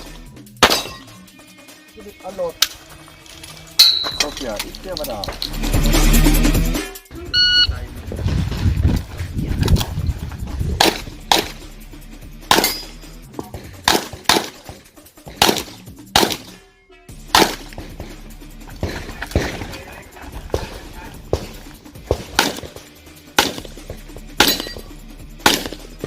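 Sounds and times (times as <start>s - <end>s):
handgun shots: 0.6s - 1.1s, 10.8s - 11.6s, 12.5s - 16.6s, 17.3s - 17.9s, 22.1s - 23.8s, 24.4s - 24.8s, 25.4s - 25.9s
shot timer beep: 7.3s - 7.8s.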